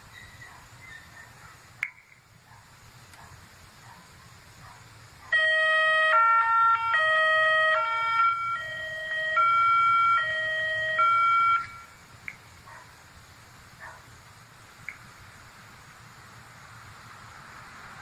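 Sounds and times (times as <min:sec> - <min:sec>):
electronic siren hi-lo tones: 0:05.4 - 0:12.0.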